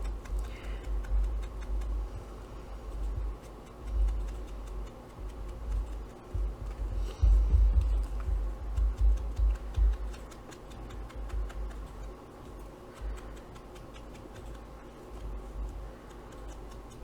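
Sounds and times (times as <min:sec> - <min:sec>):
low thumps and rumble: 0:00.0 - 0:10.2.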